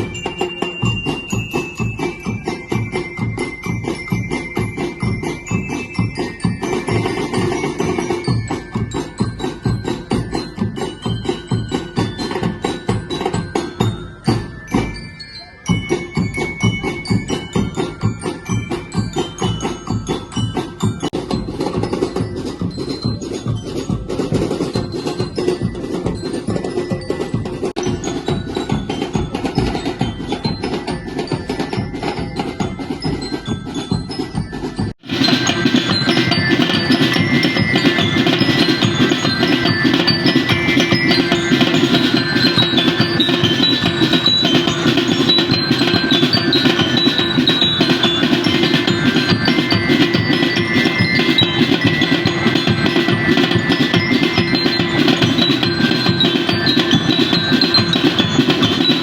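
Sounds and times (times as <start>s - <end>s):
bell-like mallet percussion: 0.0s - 59.0s
wood-block knocks: 35.0s - 59.0s.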